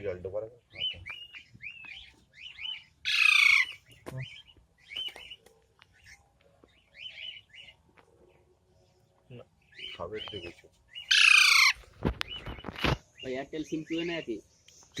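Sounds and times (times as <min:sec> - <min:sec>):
parrot chirping: 0:00.8 - 0:05.0, 0:10.9 - 0:12.4
parrot screeching: 0:03.0 - 0:03.8, 0:11.1 - 0:11.8.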